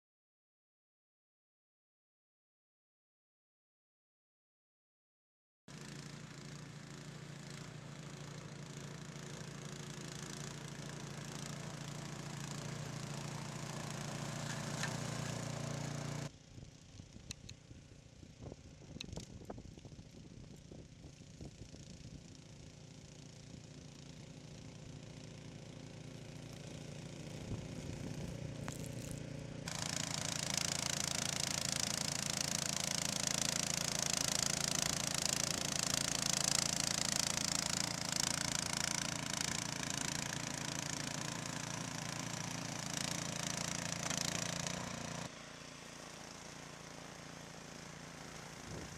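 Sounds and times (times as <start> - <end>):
snowblower engine running: 5.7 - 48.9.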